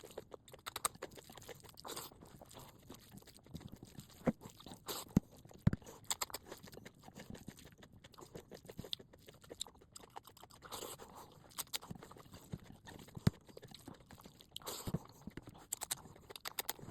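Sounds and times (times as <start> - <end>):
person chewing food: 0.0 - 16.9.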